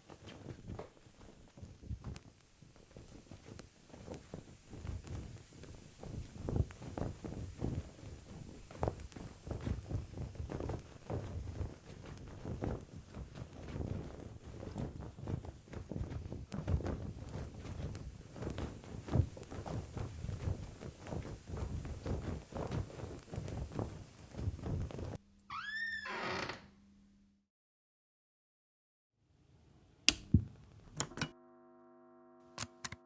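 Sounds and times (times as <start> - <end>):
footsteps dull thuds: 30.2 - 30.7.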